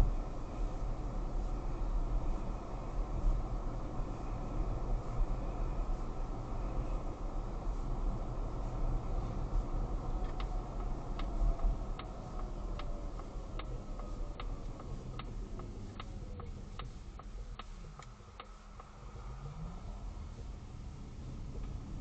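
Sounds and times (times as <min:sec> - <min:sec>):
low road rumble: 0:00.0 - 0:22.0
car suspension clicking: 0:10.2 - 0:18.9.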